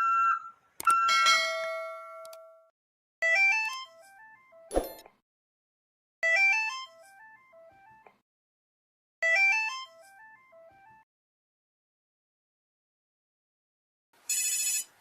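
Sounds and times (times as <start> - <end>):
mobile phone ringtone: 0.0 - 2.4, 9.2 - 11.0, 14.3 - 15.0.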